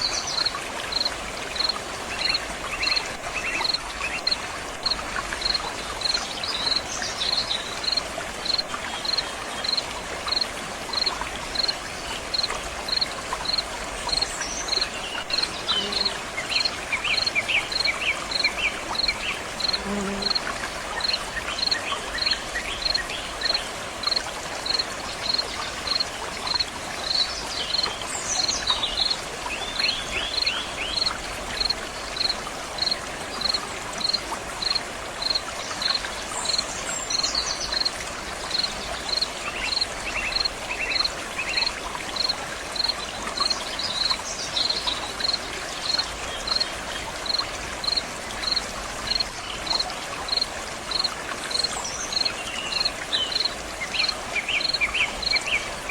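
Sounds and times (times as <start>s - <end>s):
stream water running: 0.0s - 55.9s
cricket chirping: 7.3s - 11.7s, 12.3s - 14.8s, 17.2s - 20.4s, 30.4s - 36.6s, 45.2s - 46.6s, 47.2s - 51.1s.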